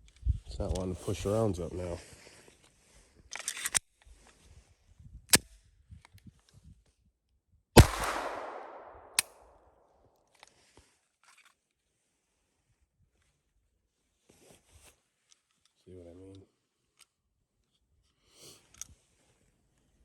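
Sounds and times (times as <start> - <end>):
pistol shot with echo: 7.8 - 9.2
pistol handling clicks: 7.8 - 9.3.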